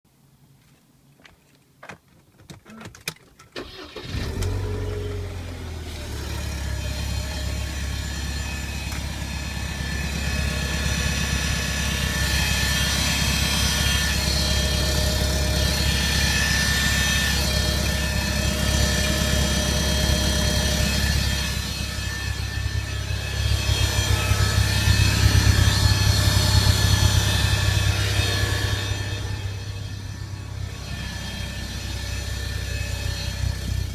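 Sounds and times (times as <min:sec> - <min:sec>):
clicks before engine start: 0:02.4 - 0:04.7
high-pitched engine whine: 0:03.6 - 0:33.9
car engine running loudly: 0:03.8 - 0:33.9.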